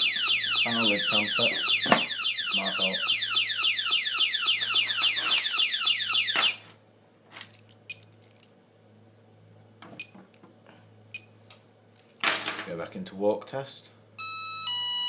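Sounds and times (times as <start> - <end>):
alarm falling sweep: 0.0 - 6.6.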